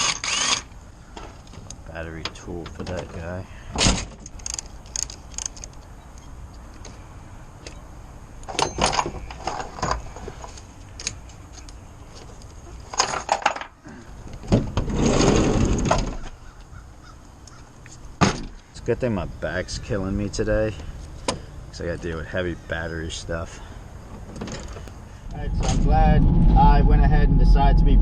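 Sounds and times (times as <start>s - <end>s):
hand tools clicking and clanking: 3.9s - 5.9s, 8.4s - 14.4s.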